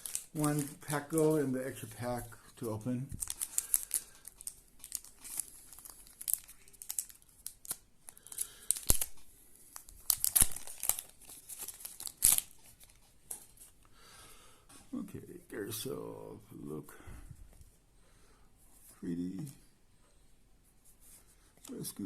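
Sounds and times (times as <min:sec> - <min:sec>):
wrapper crinkling and ripping: 0:00.0 - 0:13.7.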